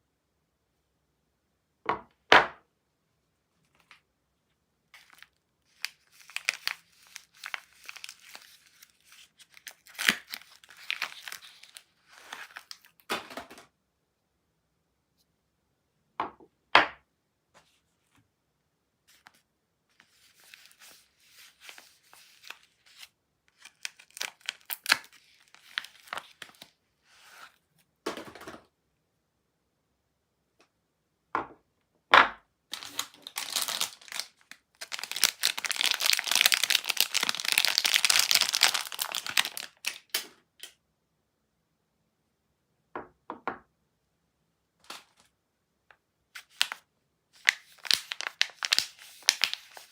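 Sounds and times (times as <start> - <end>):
wrapping crinkling and tearing: 4.9 - 13.1, 20.0 - 27.5, 32.7 - 40.2, 46.4 - 46.8, 47.4 - 49.9.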